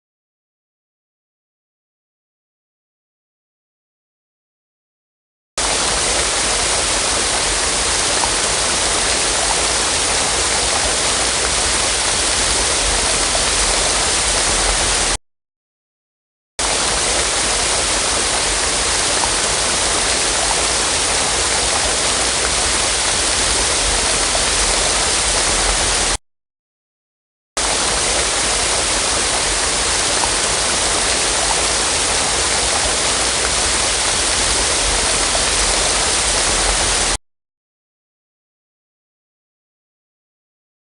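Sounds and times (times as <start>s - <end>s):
waterfall rushing: 5.6s - 15.2s, 16.6s - 26.2s, 27.6s - 37.2s.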